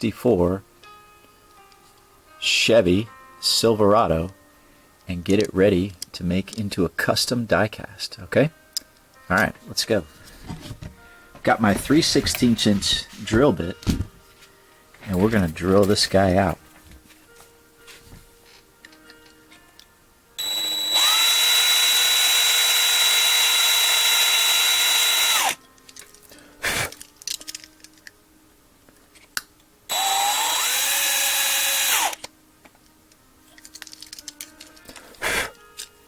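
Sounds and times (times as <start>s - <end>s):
electric drill drilling metal: 20.4s - 25.6s, 29.9s - 32.2s.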